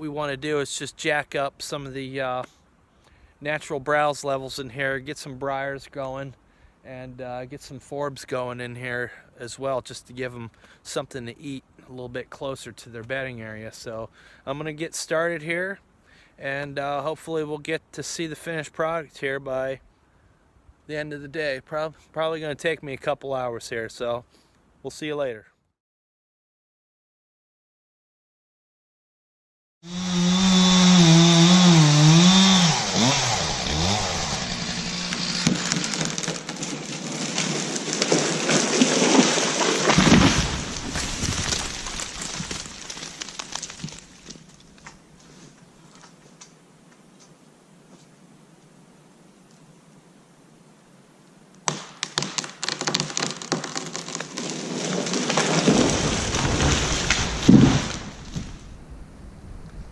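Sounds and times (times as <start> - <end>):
chainsaw running: 29.8 - 38.6
chainsaw cutting wood: 29.8 - 44.4, 51.7 - 58.6
tree trunk cracking: 30.6 - 45.0, 51.7 - 58.8
branches snapping and crackling: 32.2 - 46.6, 51.7 - 58.7
heavy thud of trunk hitting ground: 56.0 - 58.6.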